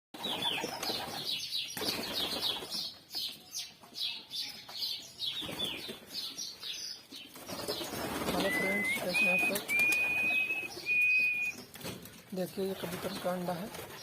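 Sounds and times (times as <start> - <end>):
pigeons flapping wings: 0.2 - 2.8, 7.4 - 10.8, 11.7 - 14.0.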